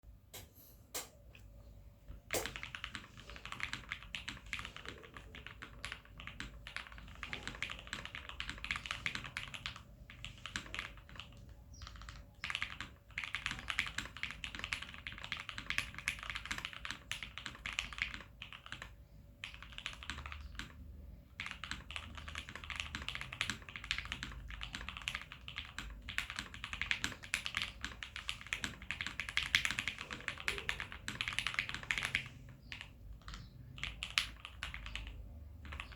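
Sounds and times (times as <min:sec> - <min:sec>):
mechanical keyboard typing: 0:02.3 - 0:35.9.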